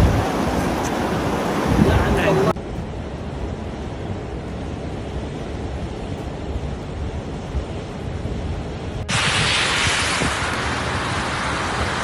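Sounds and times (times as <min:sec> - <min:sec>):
rushing floodwater: 0:00.0 - 0:12.0
wind buffeting microphone: 0:00.0 - 0:12.0
steady hiss: 0:02.7 - 0:12.0.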